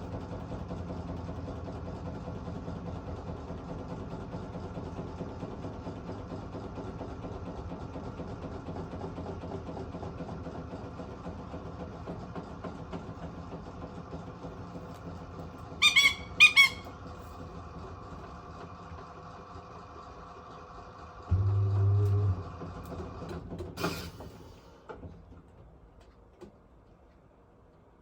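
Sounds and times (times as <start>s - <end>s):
washing machine humming: 6.6s - 23.7s
parrot squawks: 15.8s - 16.9s
loud low hum: 21.3s - 22.9s.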